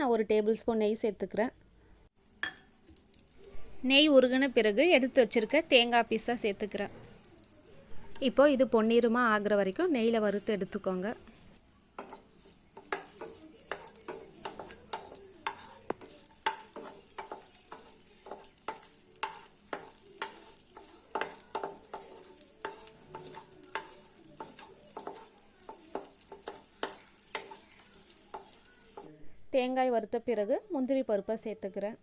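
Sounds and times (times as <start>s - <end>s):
food sizzling in fat: 2.1s - 29.2s
spatula scraping pan: 10.0s - 29.1s.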